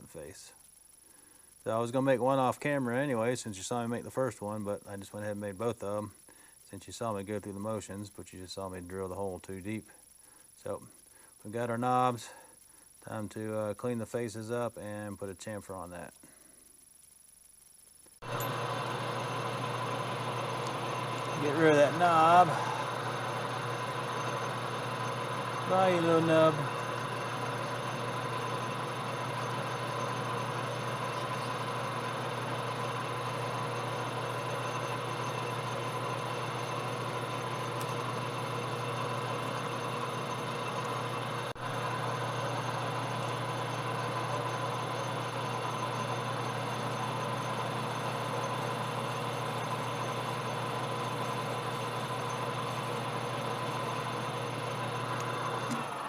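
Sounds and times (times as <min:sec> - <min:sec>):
metal lathe running: 0:18.2 - 0:56.0.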